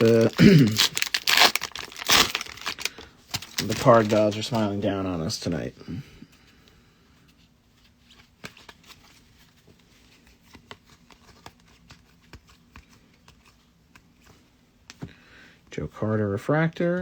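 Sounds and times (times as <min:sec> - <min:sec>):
light clicks and rustles of cards: 0:07.4 - 0:15.2.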